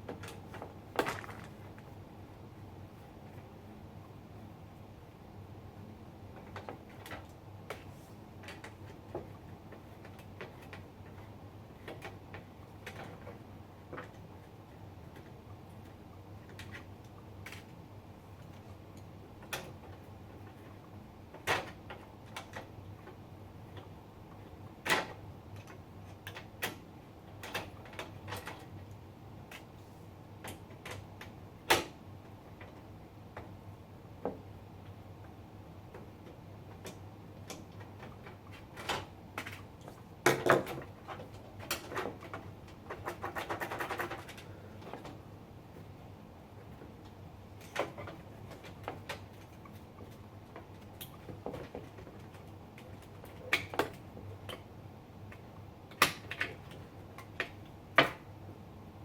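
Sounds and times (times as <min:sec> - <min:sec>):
computer parts clicking and knocking: 0:40.2 - 0:45.1.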